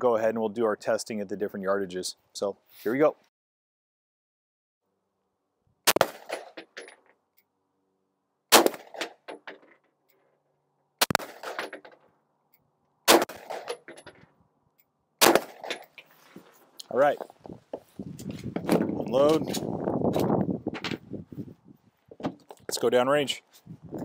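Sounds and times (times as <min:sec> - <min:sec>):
pistol shots with ringing echo: 0:05.9 - 0:06.4, 0:15.2 - 0:15.8.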